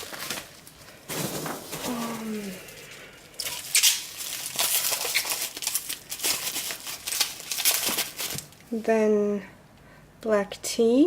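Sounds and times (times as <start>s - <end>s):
plastic packaging crinkling: 0.0s - 8.8s.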